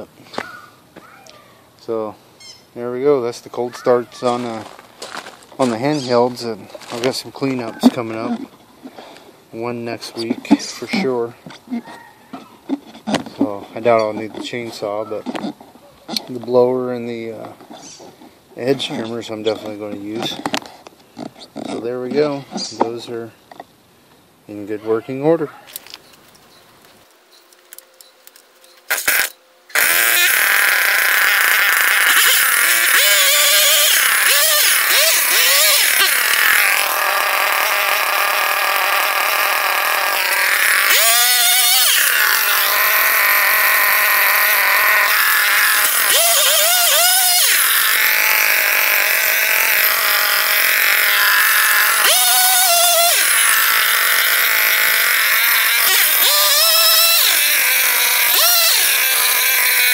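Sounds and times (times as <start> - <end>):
chainsaw starting and revving: 3.8 - 17.8, 28.9 - 59.9.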